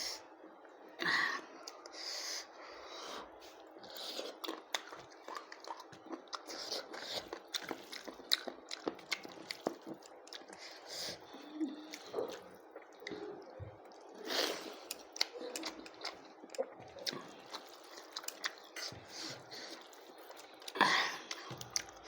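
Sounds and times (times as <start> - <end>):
person chewing: 3.4 - 22.0.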